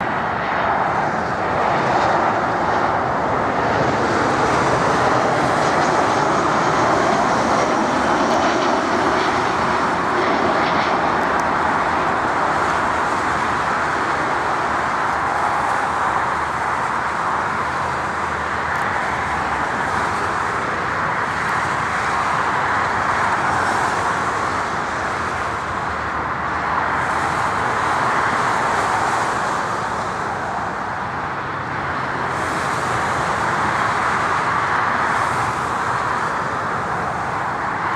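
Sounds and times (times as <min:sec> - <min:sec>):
airliner jet engines: 0:00.0 - 0:37.9.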